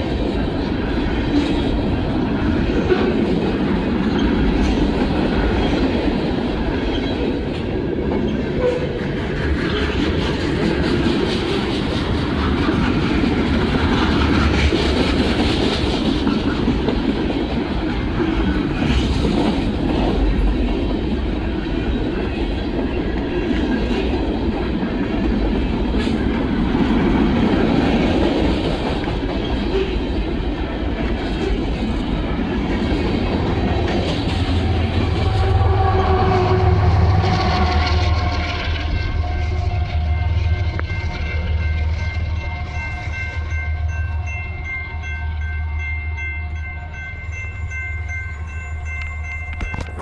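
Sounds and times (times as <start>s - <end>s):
train wheels rumbling on rails: 0.0s - 50.0s.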